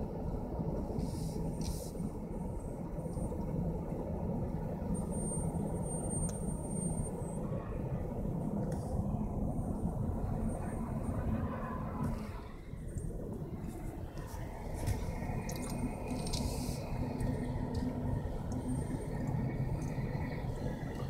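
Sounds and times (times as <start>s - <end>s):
vehicle engine and road noise: 0.0s - 21.0s.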